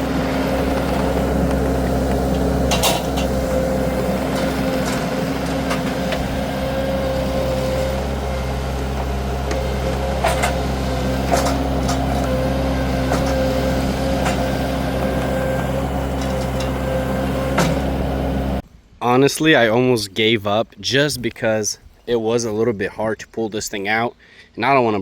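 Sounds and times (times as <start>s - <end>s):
skid steer engine under load: 0.0s - 18.6s
sharp knocks and clanks: 0.6s - 3.7s, 9.0s - 14.5s.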